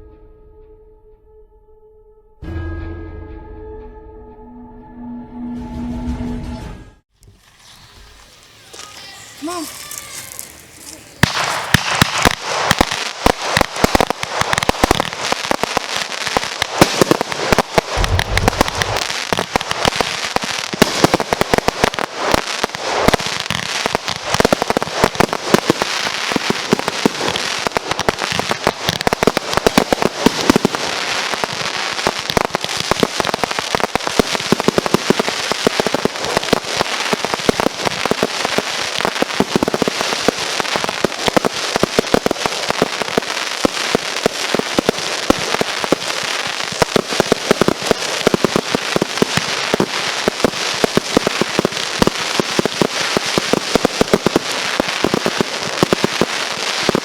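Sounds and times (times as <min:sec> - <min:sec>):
fireworks popping and crackling: 0:07.2 - 0:57.0
low rumble: 0:18.0 - 0:19.1.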